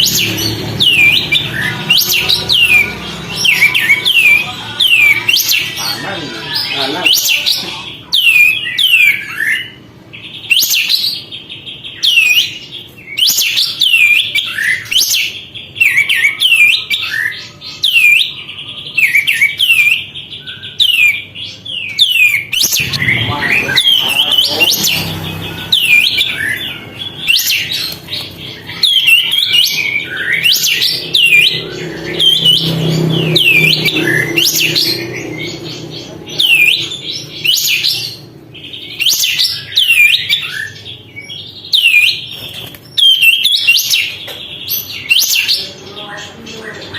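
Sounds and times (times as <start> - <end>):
bulbul chirping: 0.0 - 9.8, 19.0 - 45.6.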